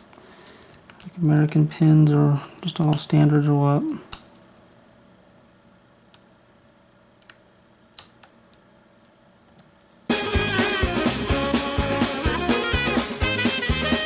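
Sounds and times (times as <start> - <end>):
swing music with drums: 10.1 - 14.0.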